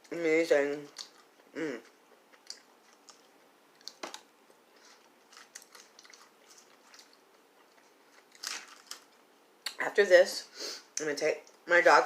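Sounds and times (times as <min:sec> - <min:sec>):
chewing salad crunches: 0:00.7 - 0:09.8.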